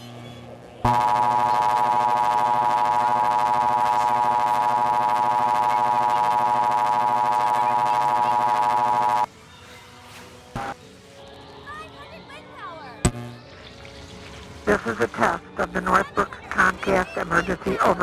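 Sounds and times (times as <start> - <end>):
steady two-tone alarm: 0.9 - 9.3.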